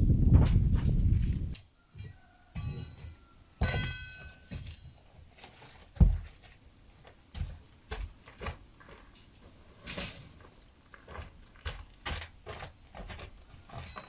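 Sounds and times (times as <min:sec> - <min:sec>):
demolition knocks and thuds: 0:02.0 - 0:05.0, 0:05.6 - 0:06.6
roof timbers dropped: 0:02.0 - 0:06.6.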